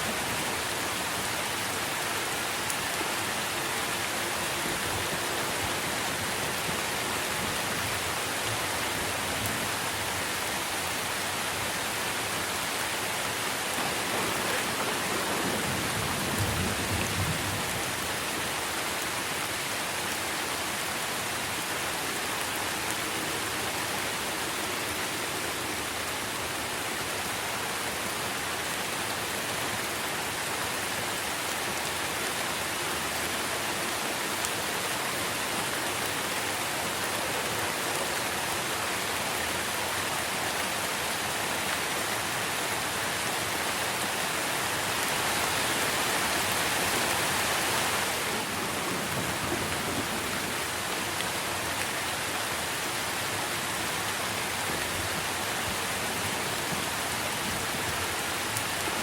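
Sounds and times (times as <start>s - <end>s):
heavy rain on leaves: 0.0s - 59.0s
thunder rumble: 13.8s - 18.0s.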